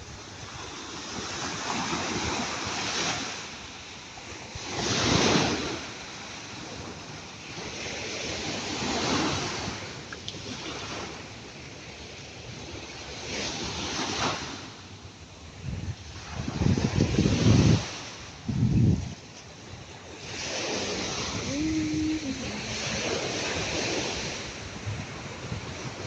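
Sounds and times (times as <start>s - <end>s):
ocean waves breaking on shore: 0.0s - 26.0s.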